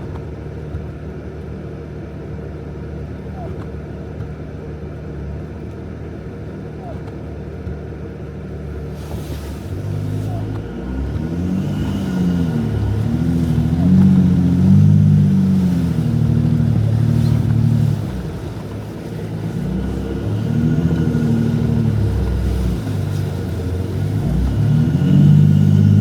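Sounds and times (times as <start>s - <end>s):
engine revving: 8.6s - 26.0s.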